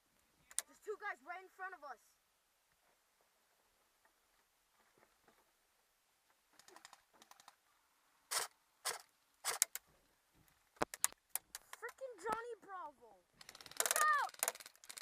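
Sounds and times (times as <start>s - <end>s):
rattle of fine clicks: 6.6s - 7.6s, 8.3s - 9.9s, 13.4s - 15.0s.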